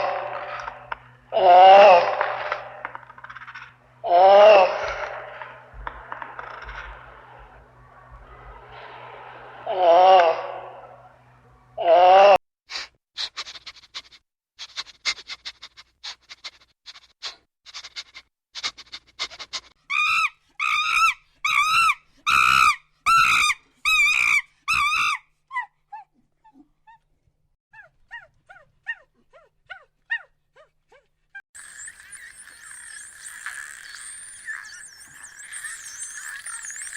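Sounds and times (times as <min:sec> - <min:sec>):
dog whining squeakily: 0:17.7 - 0:26.6, 0:31.6 - 0:36.9.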